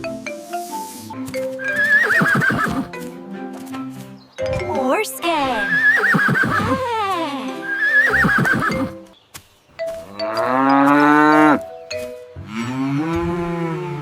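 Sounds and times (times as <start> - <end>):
cow mooing: 1.6 - 2.9, 5.6 - 6.8, 7.7 - 8.9, 10.0 - 11.7
horse whinnying: 1.6 - 2.9, 5.6 - 6.8, 7.6 - 9.0.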